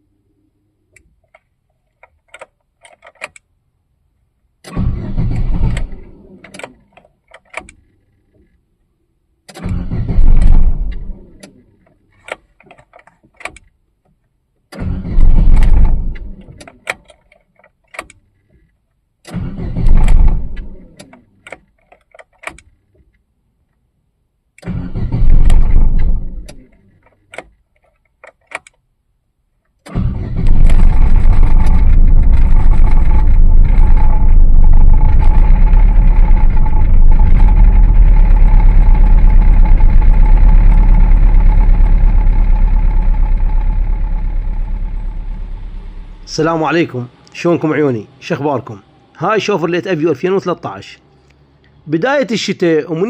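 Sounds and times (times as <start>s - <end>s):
ignition key clicking: 0.9s - 3.5s
car engine cranking: 4.6s - 8.6s, 9.5s - 13.7s, 14.6s - 18.6s, 19.2s - 23.0s, 24.6s - 28.8s, 29.8s - 47.0s
car engine running: 9.7s - 11.8s, 14.9s - 16.6s, 19.4s - 21.0s, 24.7s - 26.6s, 30.0s - 47.0s.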